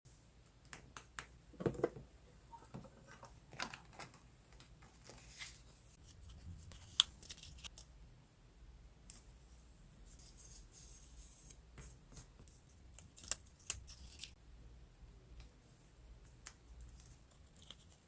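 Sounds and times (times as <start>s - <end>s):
paper rustling: 4.9s - 7.8s.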